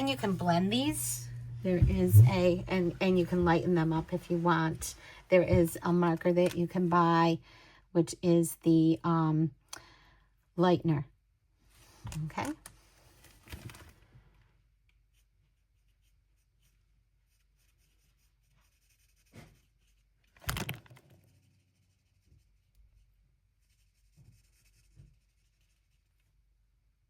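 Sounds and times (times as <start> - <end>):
marker tips scratching on cardstock: 15.1 - 20.2, 21.5 - 26.2.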